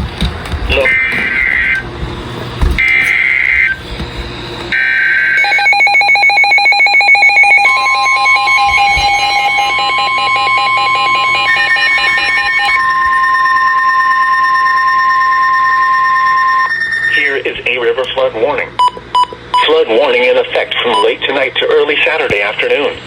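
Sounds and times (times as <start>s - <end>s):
steady warning alarm tone: 0.0s - 17.8s
screeching digital data bursts: 2.8s - 17.5s.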